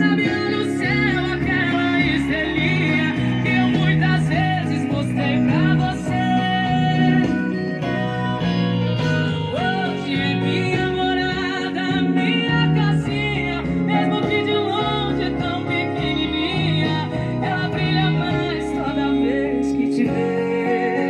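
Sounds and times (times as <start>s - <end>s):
person singing: 0.0s - 21.0s
plucked guitar: 0.0s - 21.0s
steady bass line: 0.0s - 21.0s.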